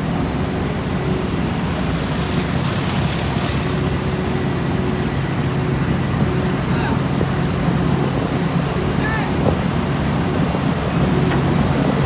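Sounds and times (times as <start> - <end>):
steady hum: 0.0 - 6.6
diesel engine rumble: 0.0 - 12.0.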